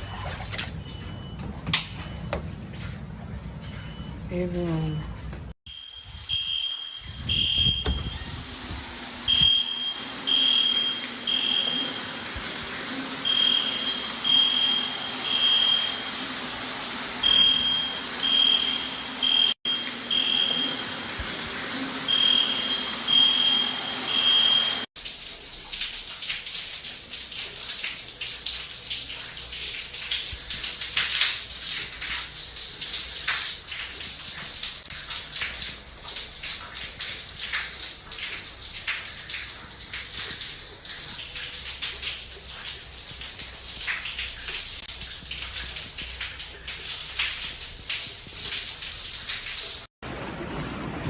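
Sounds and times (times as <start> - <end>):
drips and crackles: 0.0 - 2.9, 3.6 - 51.0
smoke alarm beeping: 5.7 - 8.4, 9.3 - 12.2, 13.2 - 16.2, 17.2 - 21.0, 22.1 - 24.9
rushing like running water: 6.0 - 51.0.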